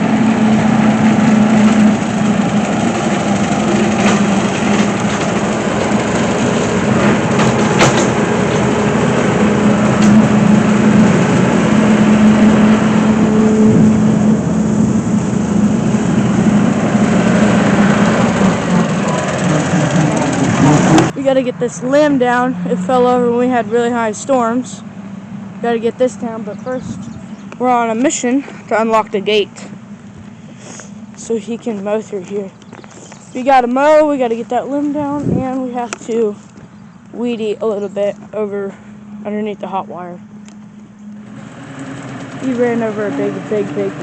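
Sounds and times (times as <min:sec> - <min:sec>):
engine running with low hum: 0:00.0 - 0:44.0
sharp knocks: 0:07.0 - 0:08.7.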